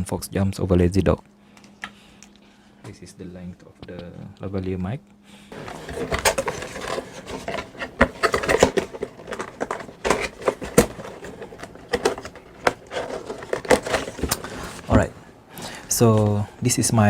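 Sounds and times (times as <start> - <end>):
microphone cable handling noise: 5.5 - 15.1.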